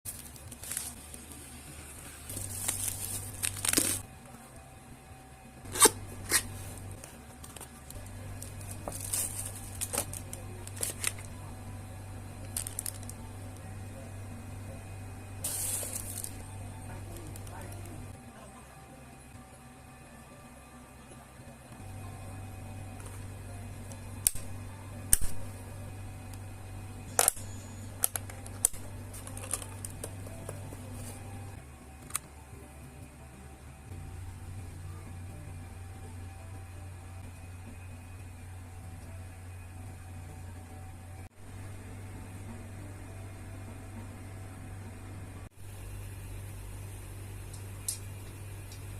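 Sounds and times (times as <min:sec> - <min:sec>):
packaging tearing and crinkling: 0:00.1 - 0:01.3, 0:02.3 - 0:04.0, 0:12.6 - 0:13.2
steady low hum: 0:00.1 - 0:48.9.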